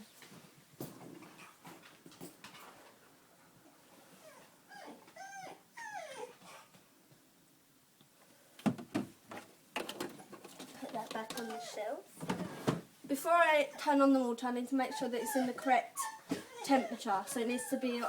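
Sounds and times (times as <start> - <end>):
dog whimpering: 4.2 - 6.7, 11.3 - 12.0, 14.8 - 18.0.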